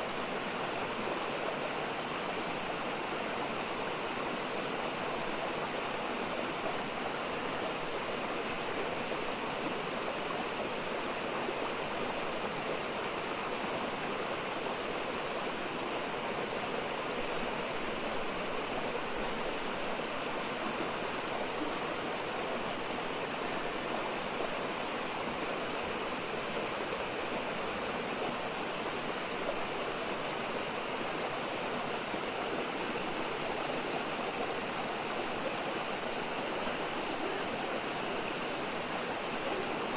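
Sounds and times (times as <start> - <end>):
stream flowing: 0.0 - 39.9.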